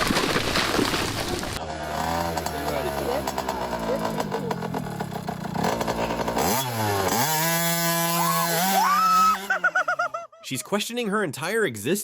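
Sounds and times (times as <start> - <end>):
engine revving: 1.6 - 10.0.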